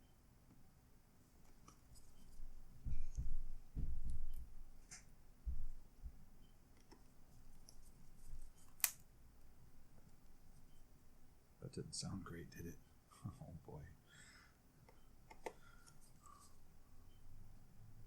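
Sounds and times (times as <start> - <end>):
dull thumps and knocks: 2.8 - 4.6.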